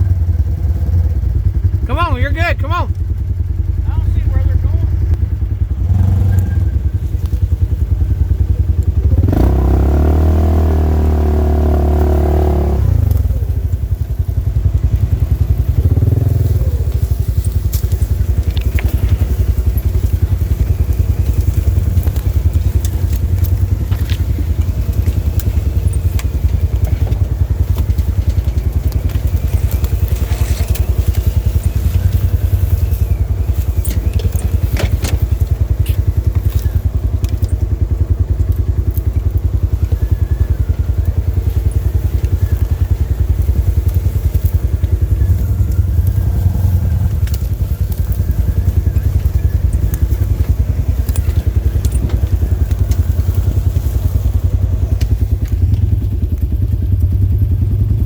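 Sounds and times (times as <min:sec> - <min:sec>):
off-road vehicle engine running: 0:00.0 - 0:58.0
clicks and snaps: 0:15.8 - 0:53.6.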